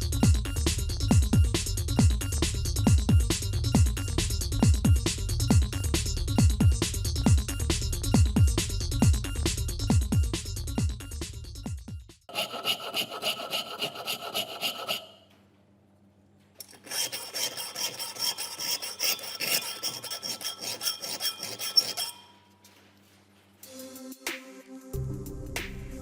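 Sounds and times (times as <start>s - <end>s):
rapid scraping strokes: 12.3s - 15.2s, 16.7s - 22.3s.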